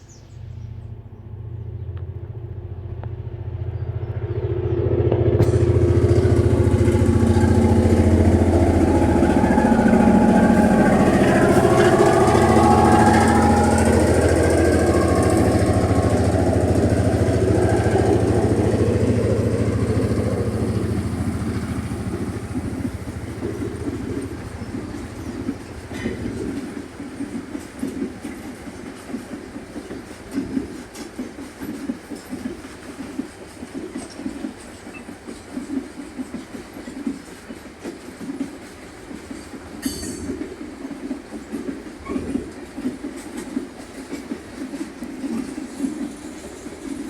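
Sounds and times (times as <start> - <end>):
locomotive engine drone: 0.0 - 31.2.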